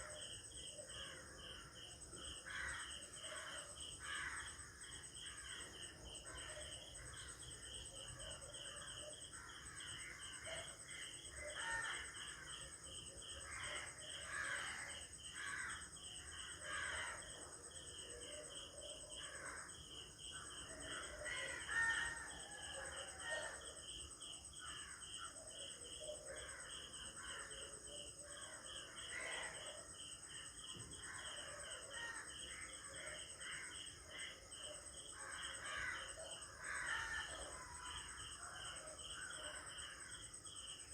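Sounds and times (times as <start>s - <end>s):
insects trilling: 0.0s - 40.9s
crows cawing: 2.4s - 4.7s, 11.3s - 12.7s, 13.4s - 17.4s, 20.4s - 23.7s, 35.2s - 38.1s.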